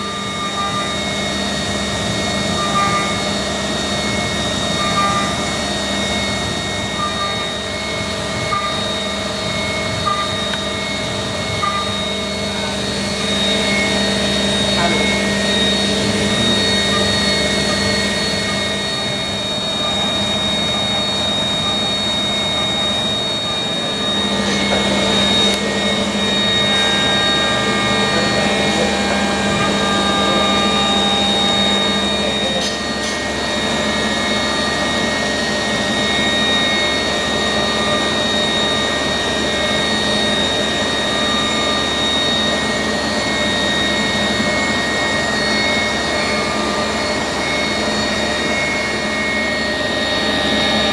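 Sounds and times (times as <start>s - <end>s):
milling machine spindle whine: 0.0s - 50.9s.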